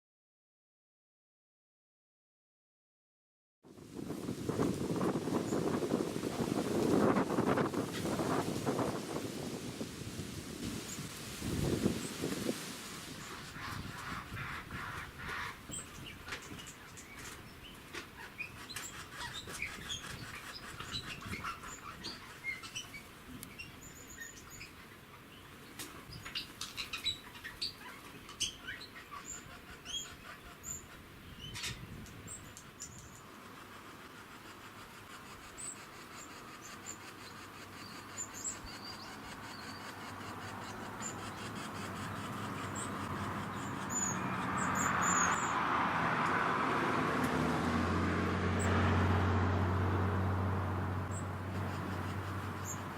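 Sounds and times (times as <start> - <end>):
motor vehicle noise: 3.7 - 23.7, 31.5 - 52.9
birds chirping: 13.2 - 33.3, 34.1 - 46.5, 51.0 - 52.9.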